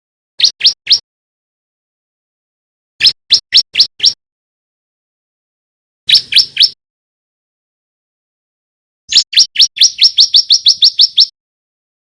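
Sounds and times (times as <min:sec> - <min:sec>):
bird singing sharp chirps: 0:06.1 - 0:06.8, 0:09.1 - 0:11.3
rapid sharp upswept chirps: 0:06.1 - 0:06.8, 0:09.1 - 0:11.3.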